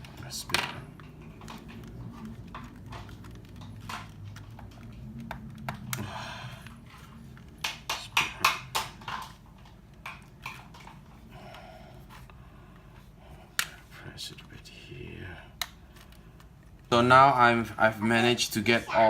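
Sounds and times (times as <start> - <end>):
plastic clips clicking and snapping: 0.0 - 11.0
low steady hum: 0.0 - 19.0.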